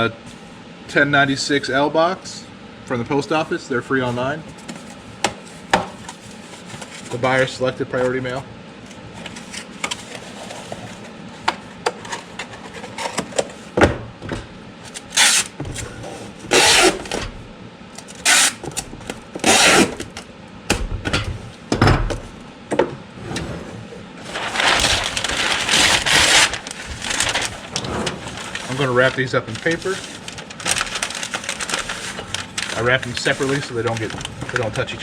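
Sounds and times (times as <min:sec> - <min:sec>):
kraft paper crinkling: 0:24.2 - 0:35.0
paper rustling: 0:24.2 - 0:35.0.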